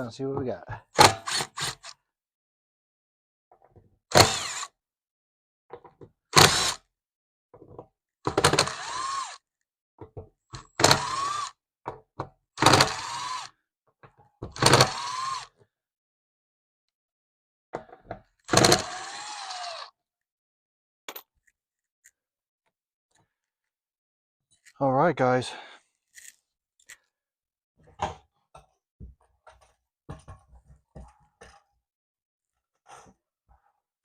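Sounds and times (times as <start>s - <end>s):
cordless drill motor whine: 1.3s - 1.9s, 4.1s - 4.7s, 6.4s - 6.8s, 8.4s - 9.4s, 10.8s - 11.6s, 12.6s - 13.5s, 14.6s - 15.5s, 18.5s - 20.0s.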